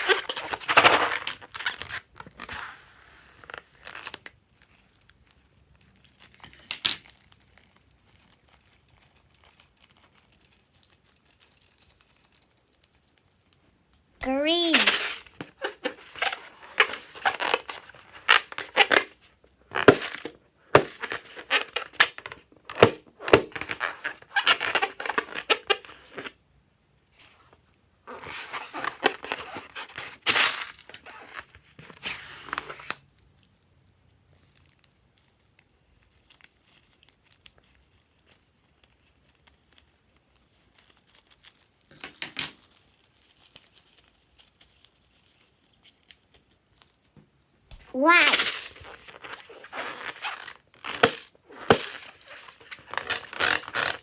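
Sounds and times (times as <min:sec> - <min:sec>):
slime balloon crackling and tearing: 0:47.7 - 0:54.0.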